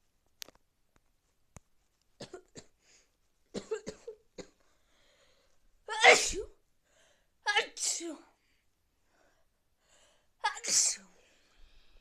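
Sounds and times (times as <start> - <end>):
person coughing quietly: 3.6 - 4.6.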